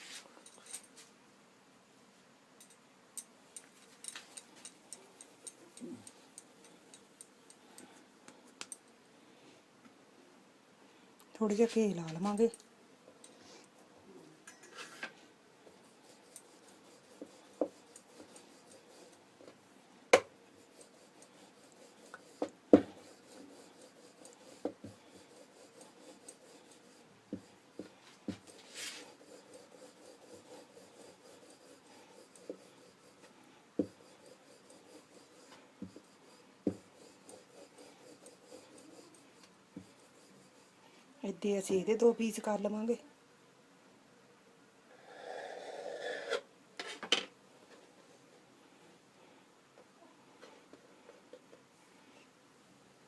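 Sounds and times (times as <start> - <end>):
rolling pin scraping over dough: 15.7 - 19.6, 20.5 - 40.8.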